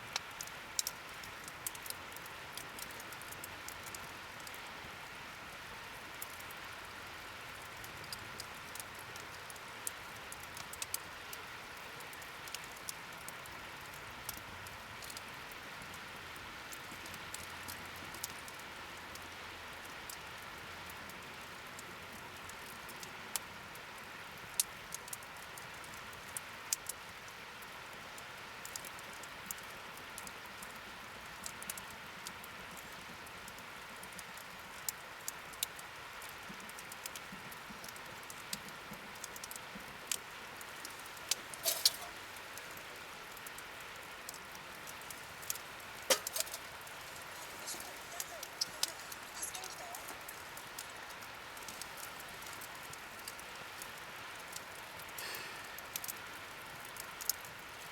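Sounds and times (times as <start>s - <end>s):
wood fire crackling: 0.0s - 57.9s
sharp pops from fire: 0.1s - 4.6s, 7.6s - 11.4s, 37.8s - 57.6s
fire hiss: 39.9s - 57.9s.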